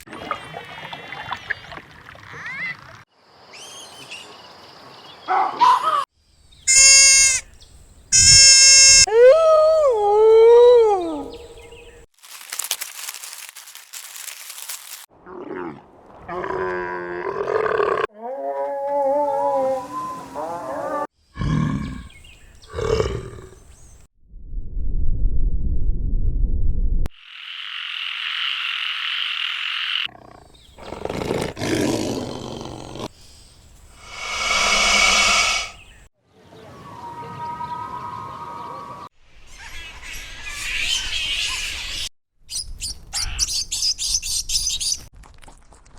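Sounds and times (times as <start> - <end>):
tiger harsh rasp: 34.0 - 35.9.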